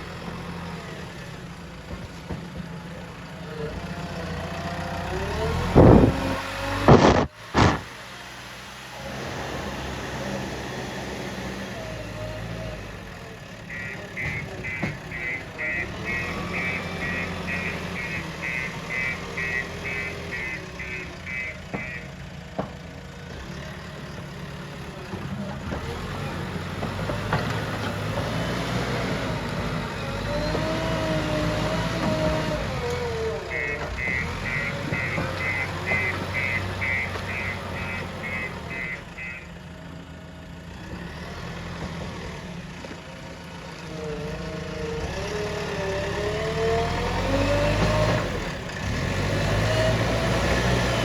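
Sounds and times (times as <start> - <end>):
backhoe diesel engine running: 0.0 - 51.0
reversing alarm beeping: 13.7 - 22.1, 33.1 - 39.5.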